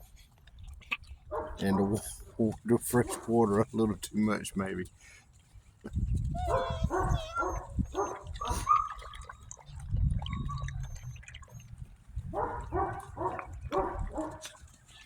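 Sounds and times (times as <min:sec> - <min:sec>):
puppies yipping: 0:06.3 - 0:11.8, 0:12.4 - 0:15.0.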